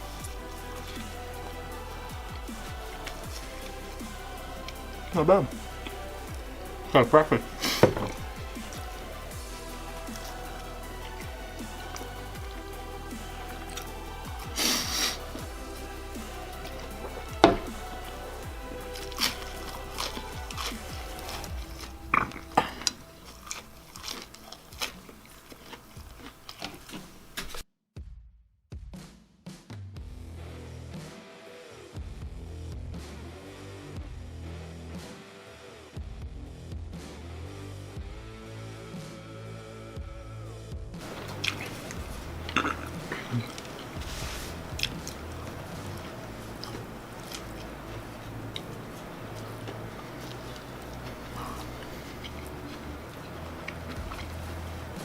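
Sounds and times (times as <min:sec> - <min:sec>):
person crunching food: 0:07.5 - 0:27.6, 0:41.0 - 0:55.0
person biting and chewing: 0:13.4 - 0:15.5, 0:16.3 - 0:27.6, 0:41.0 - 0:55.0.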